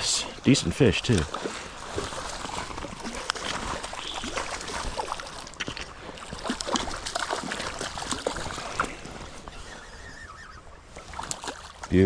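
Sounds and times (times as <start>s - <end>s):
stream rushing: 0.0s - 12.0s
fish splashing at surface: 1.0s - 9.4s.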